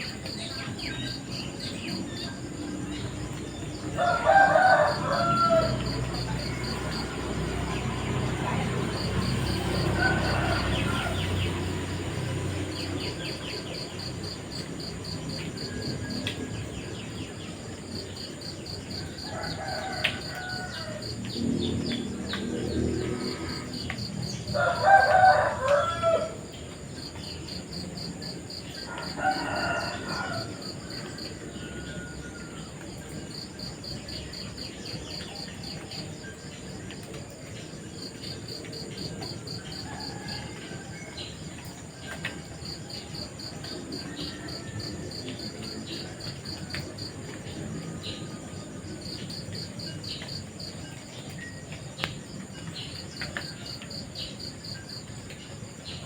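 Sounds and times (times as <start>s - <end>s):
insects chirping: 0.0s - 56.0s
rooster crowing: 3.8s - 7.4s, 9.4s - 13.0s, 19.0s - 21.4s, 23.0s - 26.6s, 28.0s - 33.1s, 38.2s - 50.4s.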